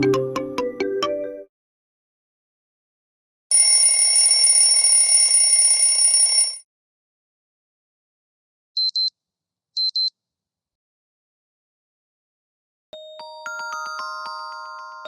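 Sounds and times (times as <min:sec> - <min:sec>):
electronic ringtone: 0:13.0 - 0:15.0.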